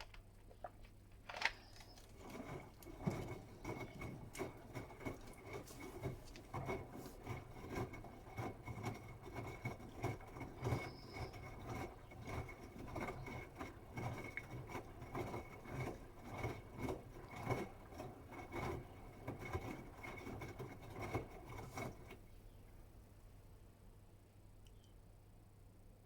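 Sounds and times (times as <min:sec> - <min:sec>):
laundry tumbling in washing machine: 0:00.0 - 0:22.3
washing machine motor whine: 0:01.6 - 0:22.3.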